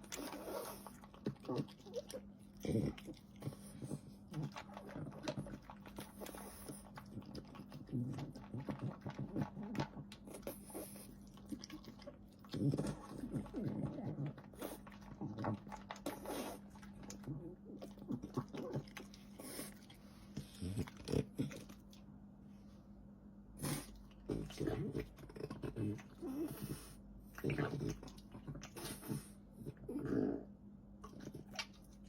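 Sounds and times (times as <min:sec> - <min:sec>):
dog chewing and licking: 0:00.0 - 0:22.1, 0:31.0 - 0:32.0.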